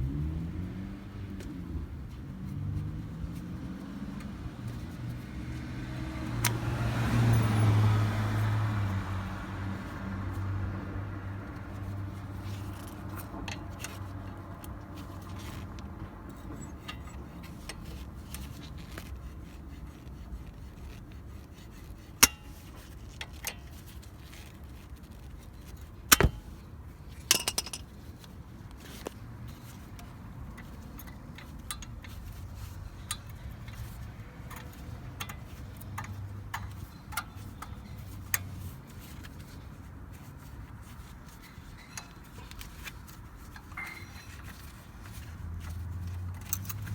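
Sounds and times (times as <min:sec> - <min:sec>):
hand tools clinking on metal: 0:27.2 - 0:28.0, 0:43.6 - 0:45.2, 0:46.3 - 0:46.9.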